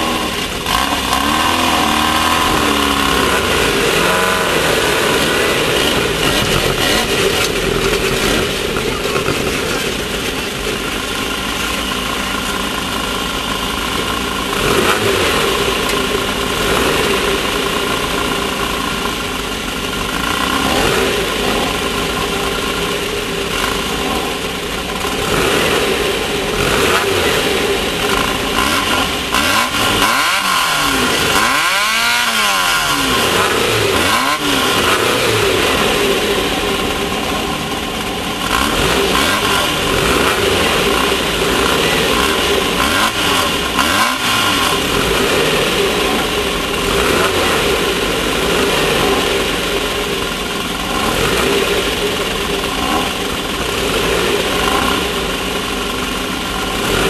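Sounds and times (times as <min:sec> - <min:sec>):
buggy engine revving: 0:00.0 - 0:57.0.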